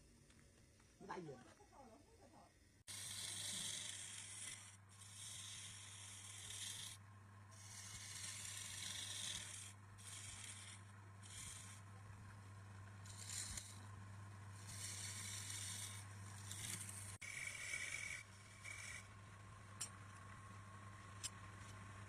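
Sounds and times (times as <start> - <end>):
steady low hum: 0.0 - 22.0
abrasive strokes over wood: 7.6 - 11.8, 14.6 - 19.1.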